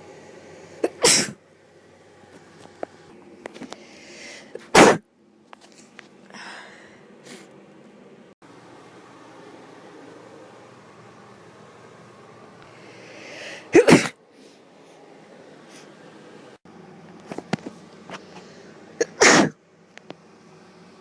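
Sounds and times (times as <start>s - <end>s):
loud sneezes: 0.8s - 1.4s, 4.6s - 5.0s, 13.7s - 14.2s, 19.0s - 19.6s
rising breath in: 12.7s - 13.7s.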